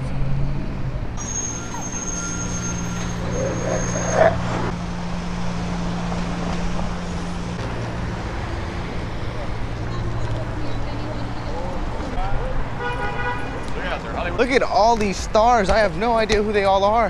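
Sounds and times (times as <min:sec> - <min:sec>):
street traffic: 0:00.0 - 0:17.0
vehicle engine humming: 0:00.0 - 0:17.0
dog whimpering: 0:01.6 - 0:04.7.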